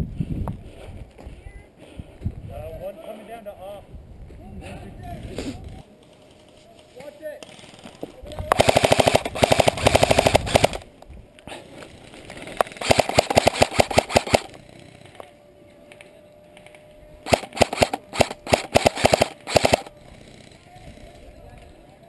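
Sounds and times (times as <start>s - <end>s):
airsoft rifle firing full auto: 8.5s - 10.9s, 12.6s - 14.6s, 17.2s - 19.9s.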